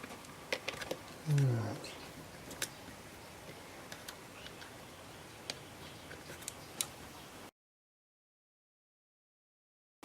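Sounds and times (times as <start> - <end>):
small parts clicking and tapping: 0.0 - 1.5.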